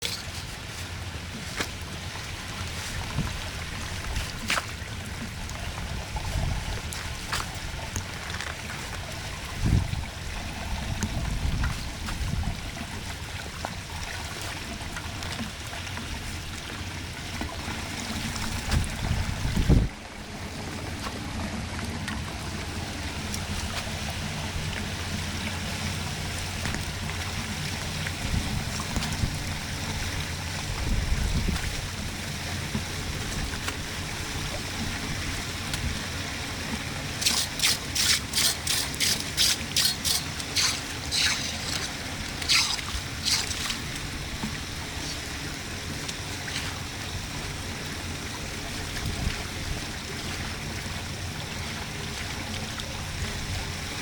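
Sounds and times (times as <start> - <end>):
floodwater draining rush: 0.0 - 54.0.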